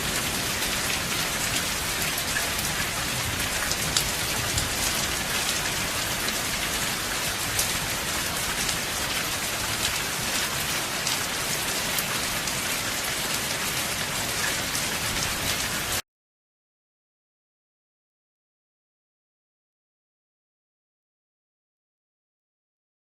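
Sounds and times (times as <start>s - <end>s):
heavy rain on a roof: 0.0s - 16.0s.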